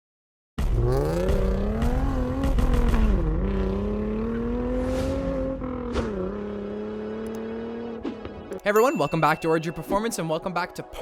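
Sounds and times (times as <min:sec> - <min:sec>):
car engine revving hard: 0:00.6 - 0:08.2.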